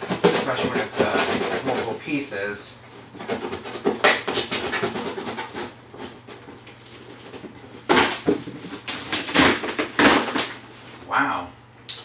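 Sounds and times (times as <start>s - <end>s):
knife cutting cardboard box: 0.0s - 2.2s, 3.2s - 6.4s
cardboard rasp: 0.0s - 10.6s.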